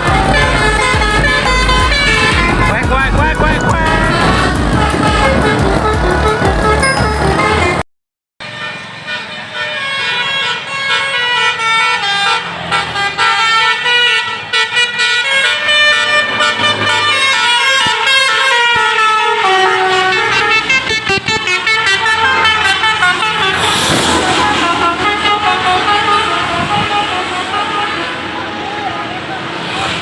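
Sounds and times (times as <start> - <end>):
musical bus horn playing tune: 0.0 - 7.8, 8.4 - 29.7
short rush of noise: 23.0 - 25.8.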